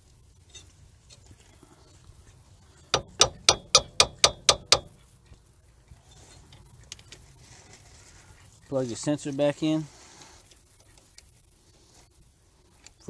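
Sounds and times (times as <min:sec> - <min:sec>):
ratchet wrench clicking: 0:03.0 - 0:05.0.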